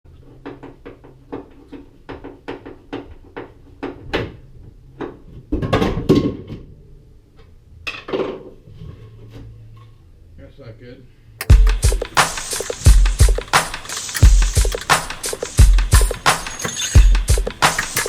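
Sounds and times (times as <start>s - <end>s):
clattering thud: 11.4s - 18.0s
sharp taps and knocks: 11.4s - 18.0s.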